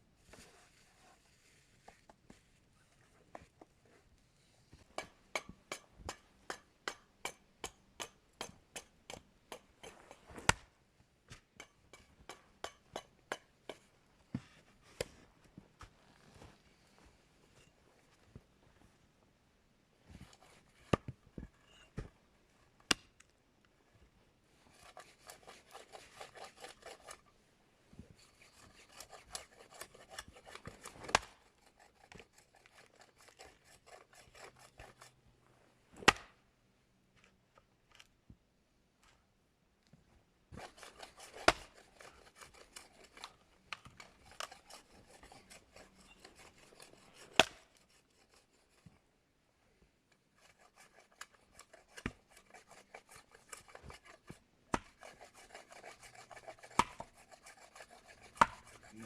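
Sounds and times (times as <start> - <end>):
rasping scraping on wood: 24.7 - 27.2, 28.2 - 35.1, 40.6 - 43.4, 44.0 - 48.8, 50.4 - 59.0.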